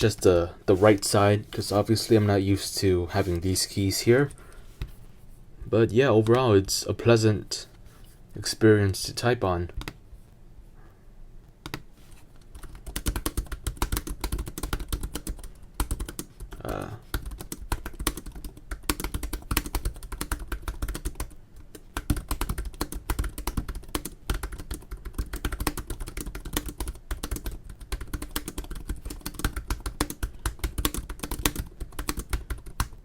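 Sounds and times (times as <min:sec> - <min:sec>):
laptop keyboard typing: 0:11.6 - 0:11.8, 0:12.4 - 0:33.0.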